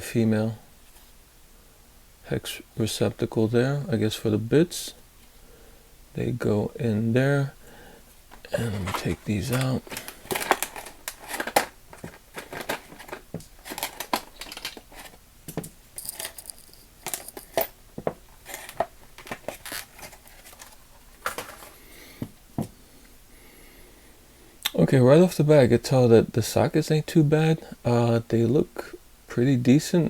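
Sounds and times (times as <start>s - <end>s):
plastic crinkling and rustling: 8.3s - 21.9s.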